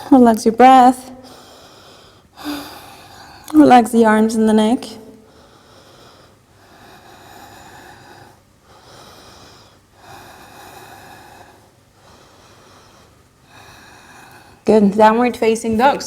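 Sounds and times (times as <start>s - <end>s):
woman breathing heavily: 1.2s - 3.5s, 5.2s - 14.7s.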